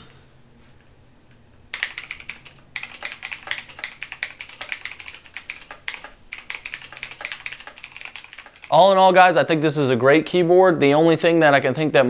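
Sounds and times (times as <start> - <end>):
typing on mechanical keyboard: 1.7 - 8.8.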